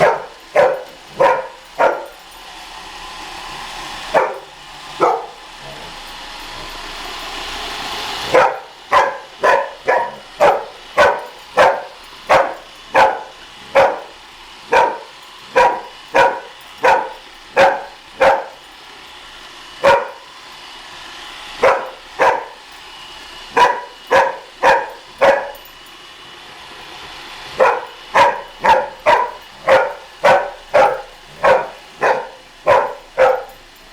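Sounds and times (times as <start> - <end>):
dog barking: 0.0 - 2.2, 4.1 - 5.9, 8.3 - 18.7, 19.8 - 20.4, 21.6 - 22.8, 23.5 - 25.7, 27.5 - 33.7
robot vacuum whirring: 3.4 - 33.9.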